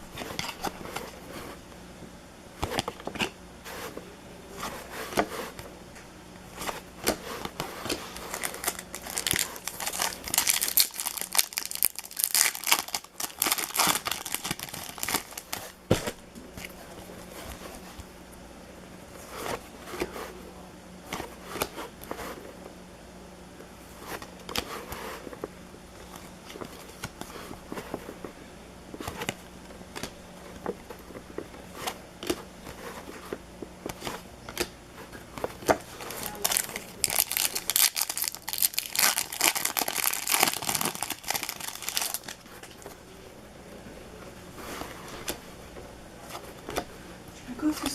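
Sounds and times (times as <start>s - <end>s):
card packs rustling and tapping: 6.6s - 18.0s, 28.9s - 43.0s
wrapper crinkling and tearing: 8.2s - 15.8s, 36.0s - 42.8s.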